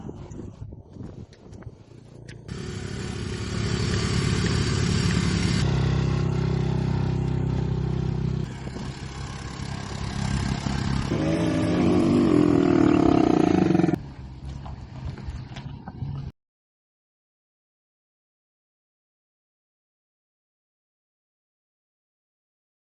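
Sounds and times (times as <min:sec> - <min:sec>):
vehicle engines running hard: 0:01.9 - 0:16.3
wavering high-pitched roar: 0:07.8 - 0:14.0.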